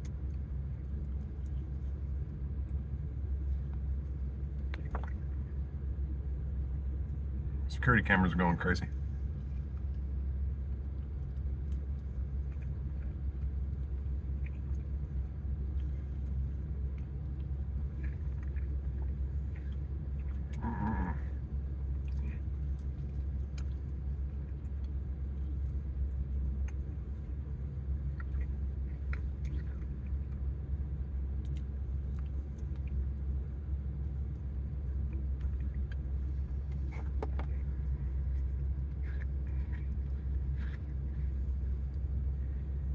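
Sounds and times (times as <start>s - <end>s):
car engine idling: 0.0s - 42.9s
faint small clicks: 31.4s - 33.0s.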